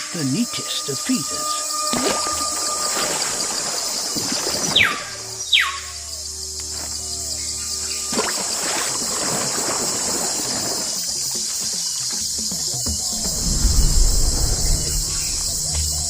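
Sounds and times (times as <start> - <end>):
high insect drone: 0.0 - 16.0
water sounds: 0.3 - 5.4, 7.9 - 11.4, 12.9 - 16.0.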